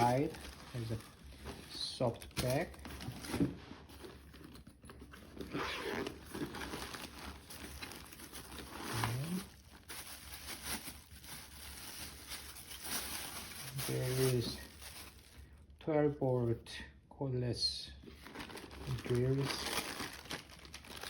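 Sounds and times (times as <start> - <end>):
packaging crinkling and rustling: 0.0 - 15.6, 18.0 - 21.0.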